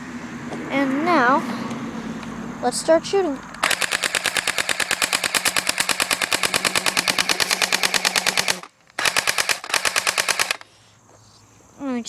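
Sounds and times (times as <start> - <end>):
steady hum: 0.0 - 9.7
airsoft gun firing full auto: 3.6 - 10.6.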